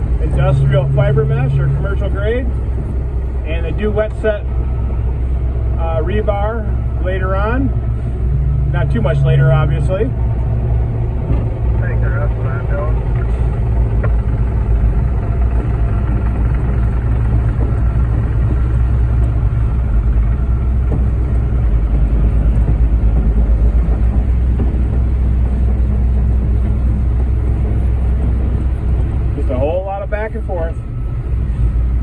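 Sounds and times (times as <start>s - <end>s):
diesel truck engine droning: 0.0s - 32.0s.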